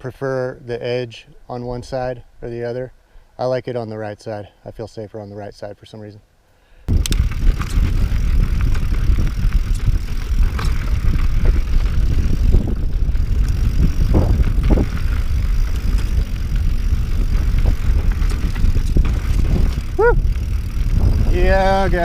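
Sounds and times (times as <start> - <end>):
bike rattling over rocks: 6.9 - 22.0
bike tyre noise: 6.9 - 22.0
wind buffeting microphone: 6.9 - 22.0.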